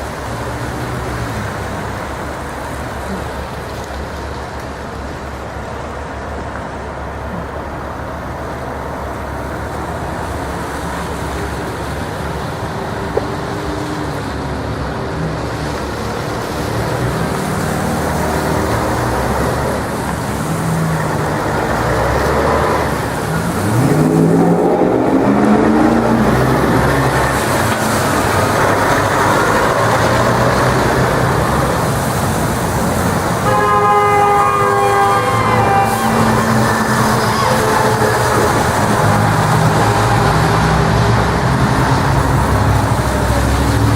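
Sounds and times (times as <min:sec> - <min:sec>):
road traffic passing: 0:00.0 - 0:43.9.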